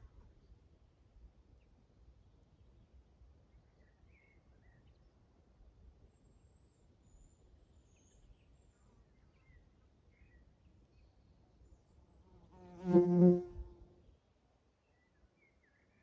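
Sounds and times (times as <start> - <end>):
flying insect buzzing: 12.6 - 13.8.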